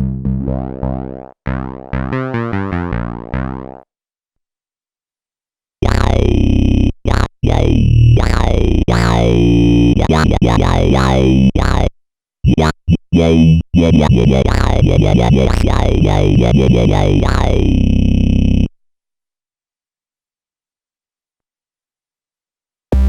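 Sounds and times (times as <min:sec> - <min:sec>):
synthesizer bass notes with filter sweep: 0:00.0 - 0:03.8, 0:05.8 - 0:11.9, 0:12.5 - 0:18.7.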